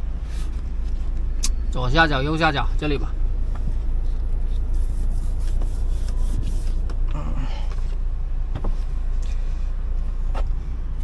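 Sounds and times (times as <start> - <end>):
steady low rumble: 0.0 - 11.0
knocks and rubbing on windscreen: 4.6 - 7.0, 7.8 - 9.0.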